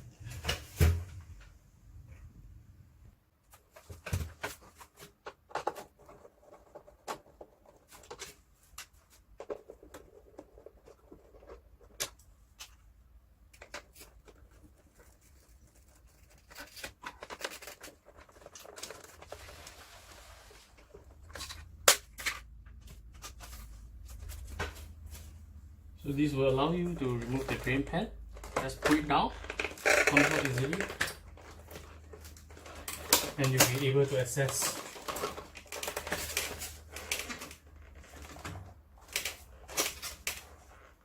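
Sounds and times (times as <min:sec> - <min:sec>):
plastic panels being handled: 0:26.5 - 0:40.9.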